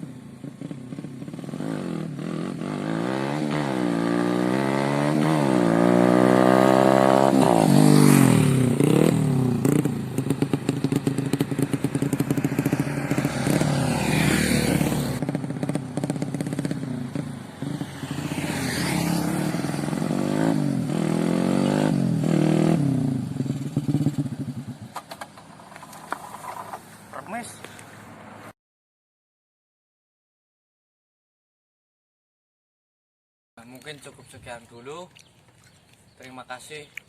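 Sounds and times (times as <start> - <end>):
moped engine revving: 0.0 - 27.5.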